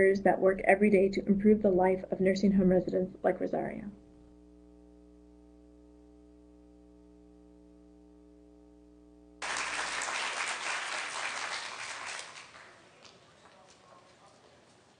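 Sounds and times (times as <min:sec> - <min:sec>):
faint steady hum: 0:00.0 - 0:14.9
audience applause: 0:09.4 - 0:14.8.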